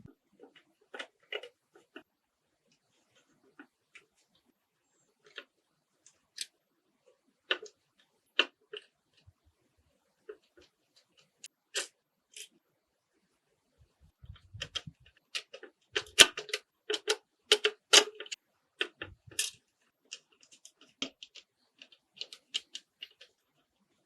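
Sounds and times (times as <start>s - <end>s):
small clicks and taps: 7.5s - 9.3s, 14.2s - 23.4s.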